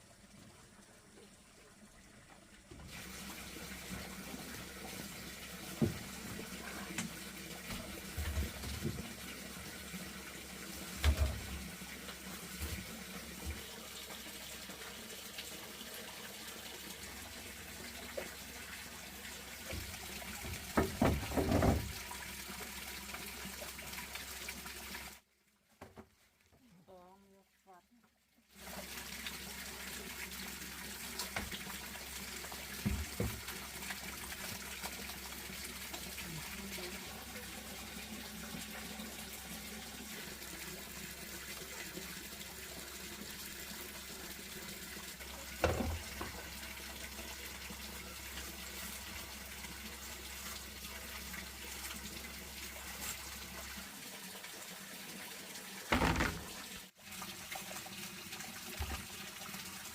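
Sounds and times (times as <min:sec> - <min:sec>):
water running: 0:00.0 - 0:27.8, 0:28.5 - 0:59.9.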